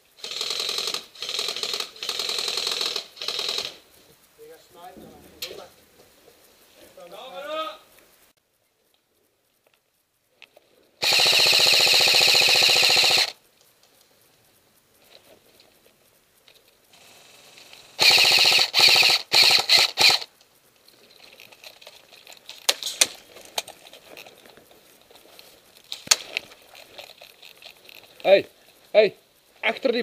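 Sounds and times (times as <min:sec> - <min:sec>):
airsoft gun automatic bursts: 0:00.1 - 0:03.8, 0:11.0 - 0:13.4, 0:16.9 - 0:20.3.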